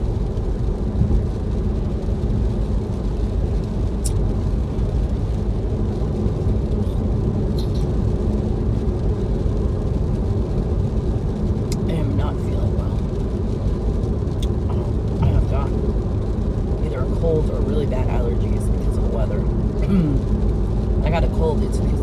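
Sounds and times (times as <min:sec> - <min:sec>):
vehicle road and engine rumble: 0:00.0 - 0:22.0.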